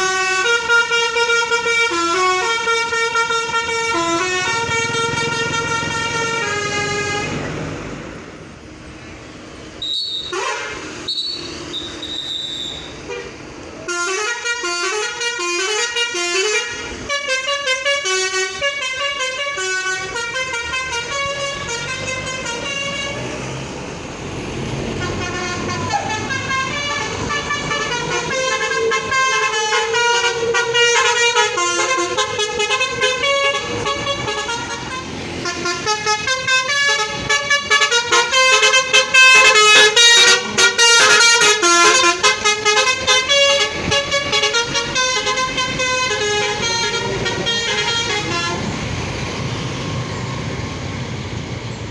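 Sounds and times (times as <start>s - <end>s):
musical air horn melody: 0.0s - 7.4s, 9.8s - 23.3s, 25.0s - 48.7s.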